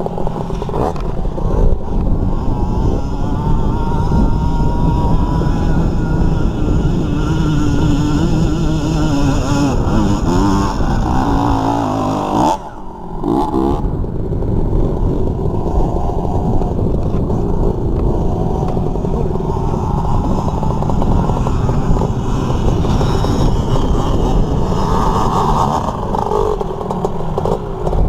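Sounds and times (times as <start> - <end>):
dirt bike engine revving: 0.0 - 28.0.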